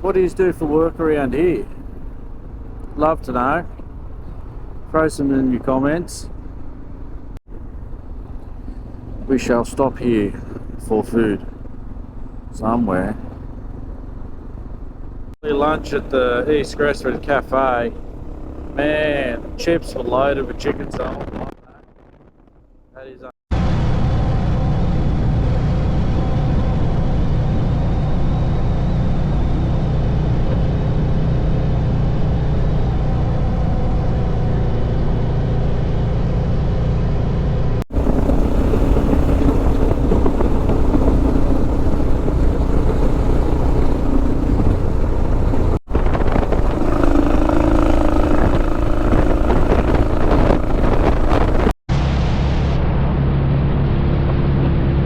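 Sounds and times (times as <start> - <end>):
motorcycle engine running: 0.0 - 22.8, 24.1 - 51.8.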